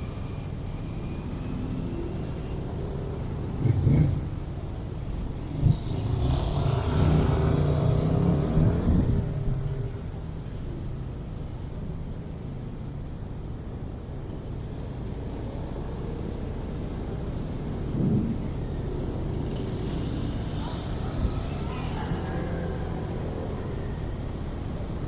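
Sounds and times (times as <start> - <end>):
distant traffic hum: 0.0 - 25.0
vehicle passing close by: 5.6 - 9.6.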